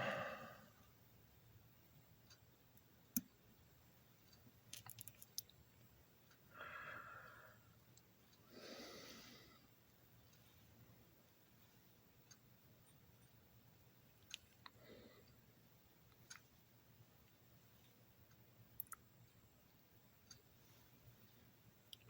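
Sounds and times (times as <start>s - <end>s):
soft breaths: 0.0s - 0.9s, 6.3s - 12.1s, 14.6s - 16.7s, 20.3s - 21.7s
small parts clicking: 4.3s - 5.6s.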